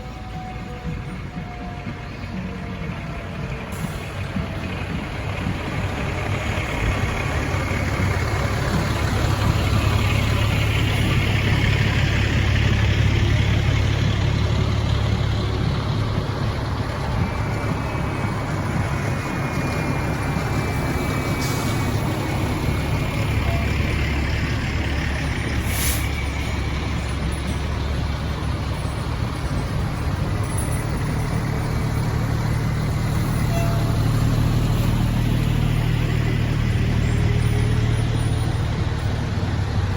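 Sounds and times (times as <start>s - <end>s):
truck engine rumbling: 0.0s - 39.9s.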